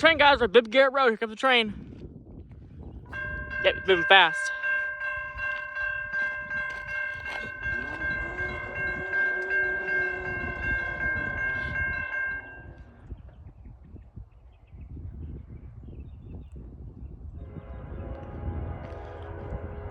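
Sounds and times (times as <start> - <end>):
locomotive horn chord: 17.4 - 19.9
train rumbling past: 17.4 - 19.9.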